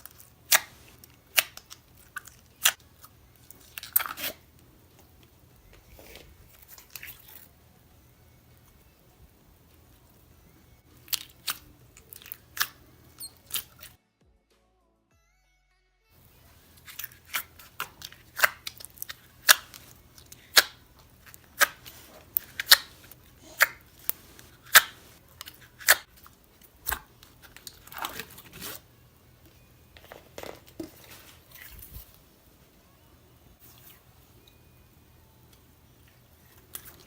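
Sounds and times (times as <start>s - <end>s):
slime squishing: 16.8s - 28.9s.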